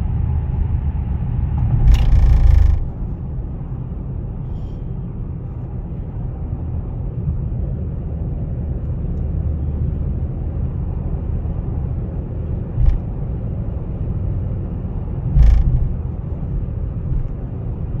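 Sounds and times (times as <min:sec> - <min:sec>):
road and drivetrain rumble: 0:00.0 - 0:18.0
short knocks: 0:15.4 - 0:16.0.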